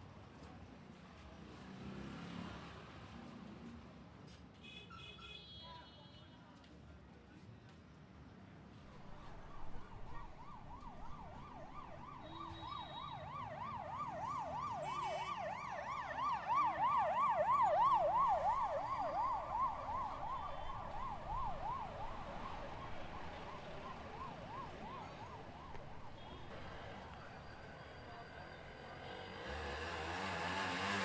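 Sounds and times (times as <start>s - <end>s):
emergency vehicle siren yelping: 8.9s - 28.8s.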